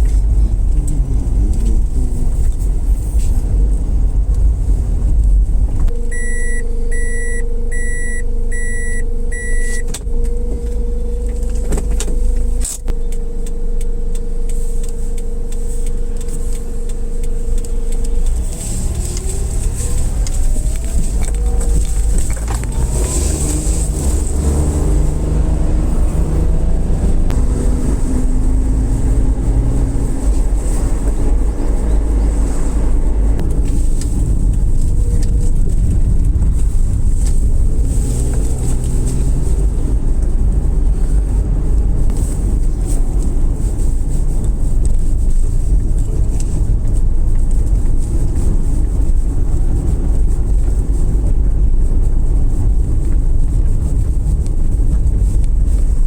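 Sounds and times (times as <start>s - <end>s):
car engine and road rumble: 0.0s - 56.0s
short high beeps: 6.0s - 9.9s.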